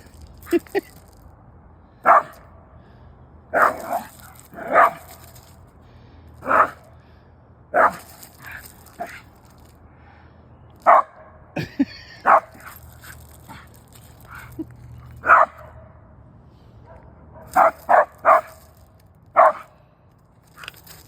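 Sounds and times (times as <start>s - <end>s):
dog barking: 2.0s - 2.4s, 3.6s - 5.0s, 6.4s - 6.8s, 7.8s - 8.0s, 10.9s - 11.2s, 15.2s - 15.8s, 16.9s - 18.6s, 19.4s - 19.7s.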